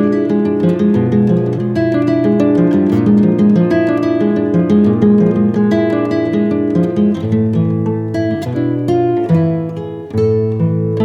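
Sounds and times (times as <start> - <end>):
acoustic guitar picking melody: 0.0 - 11.0.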